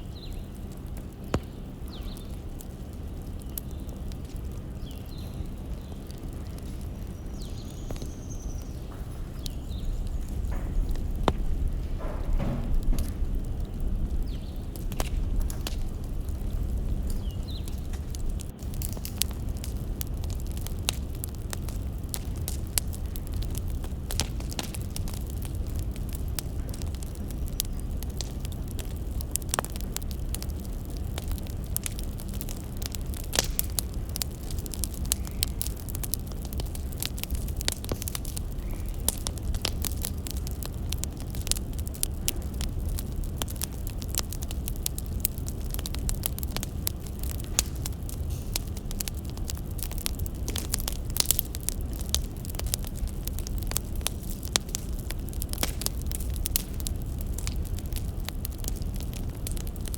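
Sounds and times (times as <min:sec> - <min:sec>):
firewood crackling and popping: 0:00.0 - 0:59.9
low rumble: 0:02.9 - 0:32.0.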